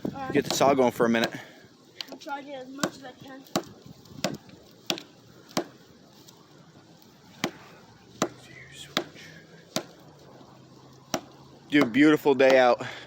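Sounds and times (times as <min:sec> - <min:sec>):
tool chopping tree trunk: 0:00.3 - 0:05.8, 0:07.3 - 0:10.1, 0:11.0 - 0:12.8.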